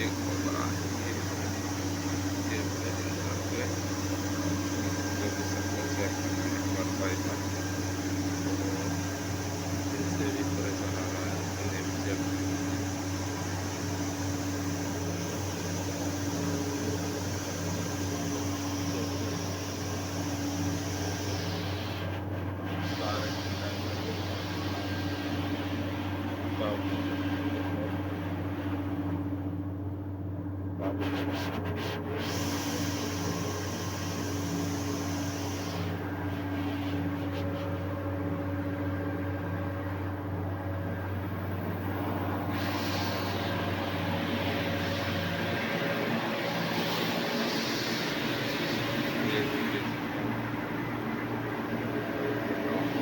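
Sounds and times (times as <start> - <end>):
compressed-air machinery hum: 0.0 - 53.0
air hiss: 32.2 - 37.8, 42.1 - 50.3.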